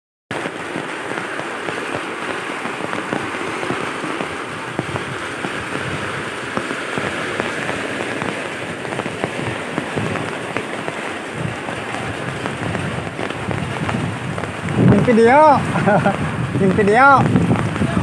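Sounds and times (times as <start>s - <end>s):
heavy rain falling: 0.3s - 18.0s
sharp raindrop impacts: 0.3s - 18.0s.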